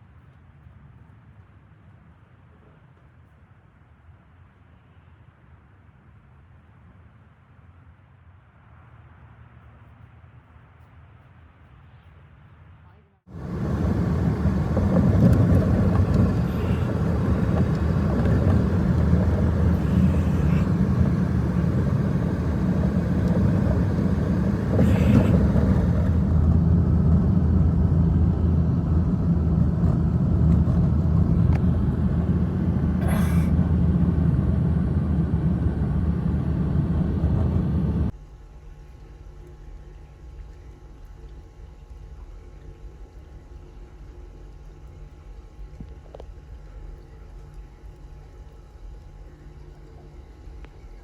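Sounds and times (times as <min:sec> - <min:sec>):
faint hisses: 0:13.3 - 0:26.3
loud low rumble: 0:13.3 - 0:38.1.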